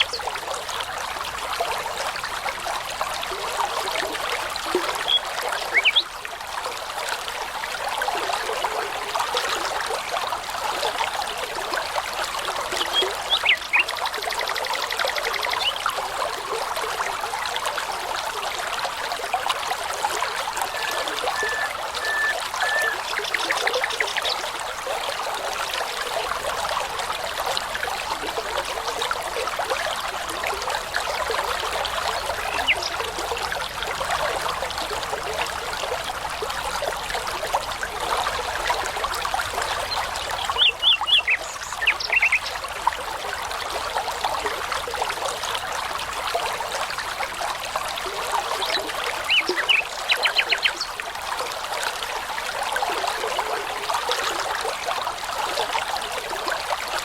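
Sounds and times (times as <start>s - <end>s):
brook babbling over stones: 0.0s - 57.0s
songbird chirps: 4.9s - 6.1s, 12.8s - 14.0s, 20.6s - 24.5s, 32.2s - 33.0s, 39.9s - 42.6s, 48.6s - 51.0s.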